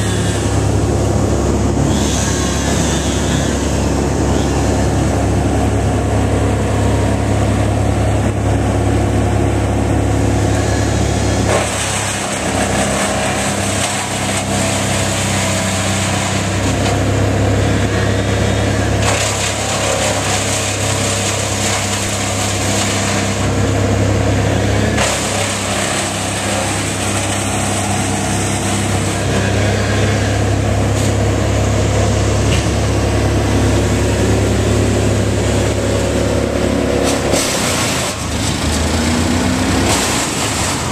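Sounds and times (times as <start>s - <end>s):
large engine humming: 0.0s - 40.9s
rushing hissing noise: 1.8s - 4.8s.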